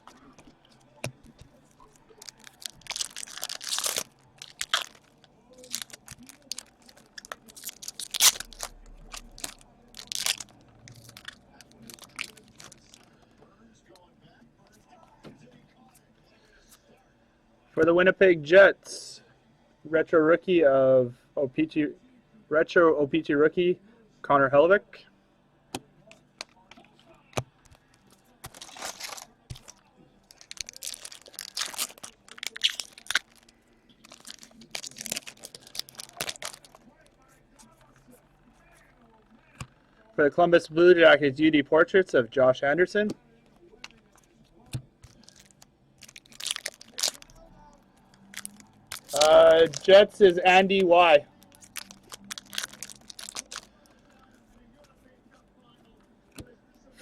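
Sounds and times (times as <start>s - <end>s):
card packs crinkling and rustling: 0.0s - 13.2s, 27.6s - 37.8s, 45.0s - 54.0s.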